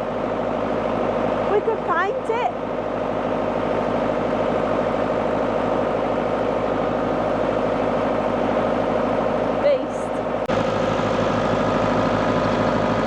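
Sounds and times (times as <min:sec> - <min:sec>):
tractor engine idling: 0:02.8 - 0:13.0.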